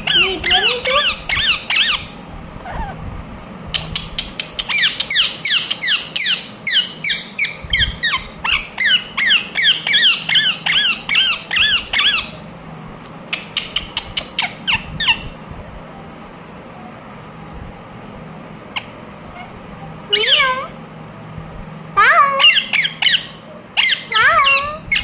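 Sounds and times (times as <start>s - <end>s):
parrot screeching calls: 0.0s - 2.1s, 4.7s - 12.4s, 18.8s - 20.7s, 22.1s - 25.0s.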